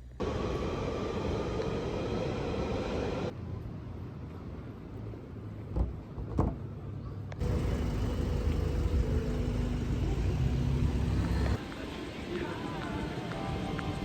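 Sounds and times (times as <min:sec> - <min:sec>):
hum: 0:00.0 - 0:03.3, 0:07.4 - 0:11.6
vehicle engine rumble: 0:00.0 - 0:11.8.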